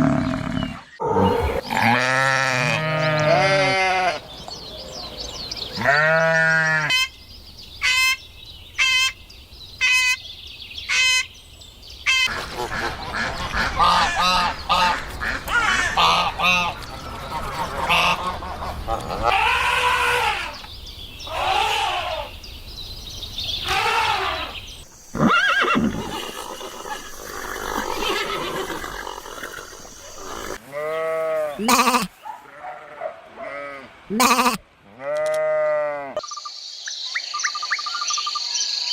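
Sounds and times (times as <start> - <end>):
geese honking: 12.1 - 20.3.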